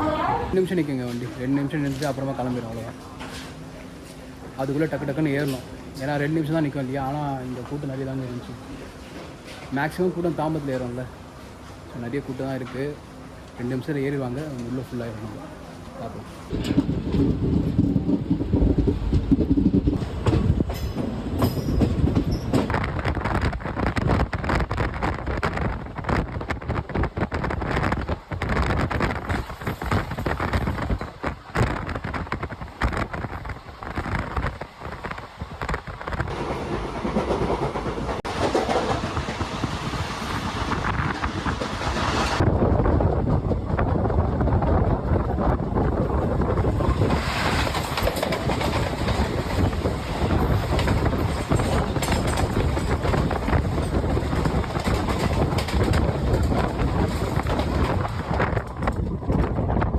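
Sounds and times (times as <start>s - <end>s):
train wheels clattering over rail joints: 16.5s - 44.5s, 45.4s - 59.9s.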